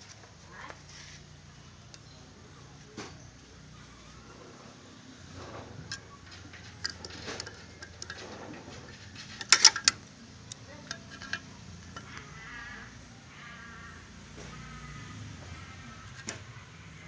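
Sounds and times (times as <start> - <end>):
metal tools clinking: 5.3 - 12.2.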